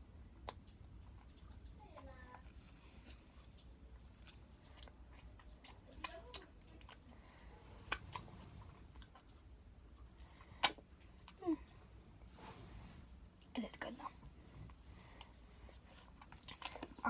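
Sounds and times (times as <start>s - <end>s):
lip-smack clicks: 10.6s - 10.9s.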